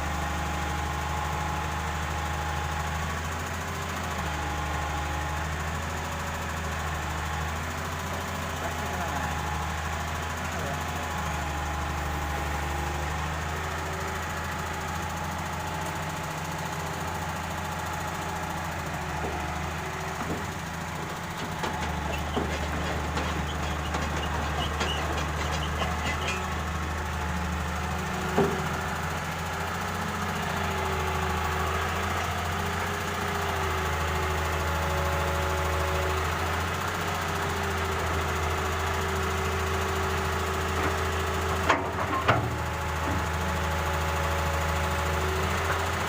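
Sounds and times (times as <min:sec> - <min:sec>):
excavator diesel engine rumbling: 0:00.0 - 0:46.0
clattering: 0:20.2 - 0:26.6.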